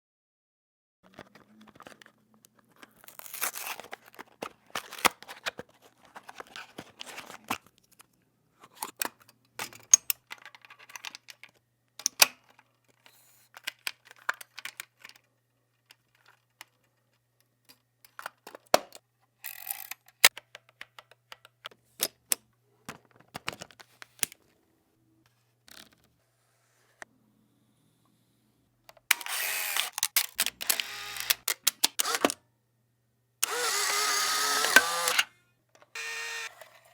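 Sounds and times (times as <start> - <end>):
camera mechanical clicks: 29.1 - 32.4, 33.4 - 35.3, 36.0 - 36.5.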